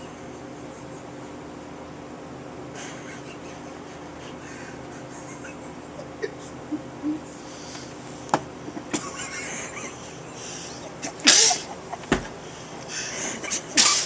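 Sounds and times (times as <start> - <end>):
man sneezing: 11.1 - 11.8, 13.4 - 14.0.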